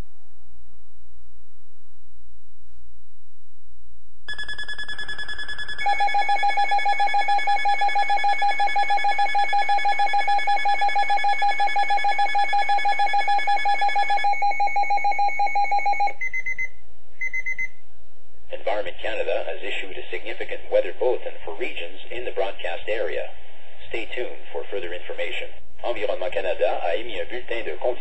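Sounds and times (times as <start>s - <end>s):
pulsing low alarm tone: 4.3s - 17.7s
steady high alarm tone: 4.3s - 17.7s
short high beeps: 13.8s - 17.8s.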